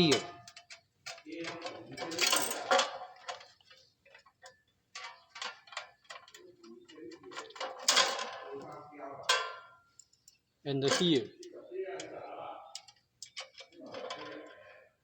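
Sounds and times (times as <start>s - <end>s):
tool clatter: 0.1s - 8.7s, 10.8s - 11.5s.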